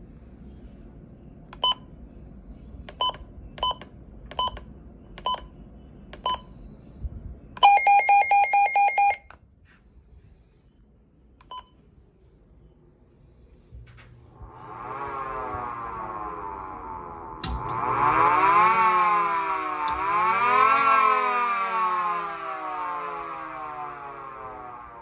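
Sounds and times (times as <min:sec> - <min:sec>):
electronic device beeping: 0:07.6 - 0:09.3.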